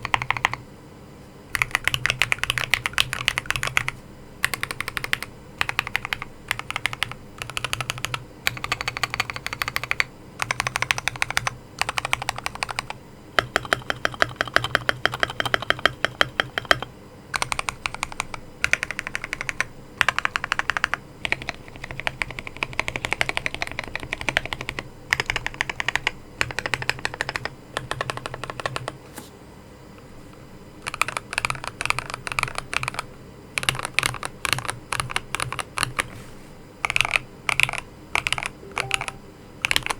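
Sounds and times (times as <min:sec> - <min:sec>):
mechanical keyboard typing: 0:00.0 - 0:00.6, 0:01.5 - 0:29.0, 0:30.8 - 0:36.1, 0:36.8 - 0:39.9.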